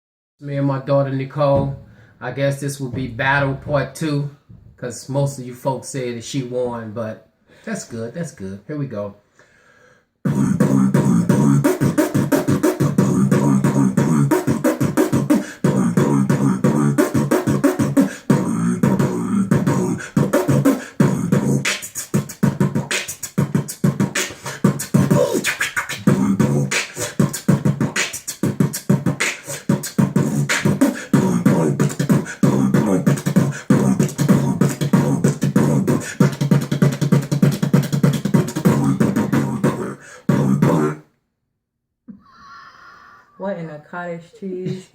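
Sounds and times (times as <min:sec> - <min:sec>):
beatboxing clicks and snare hits: 0:10.3 - 0:41.0.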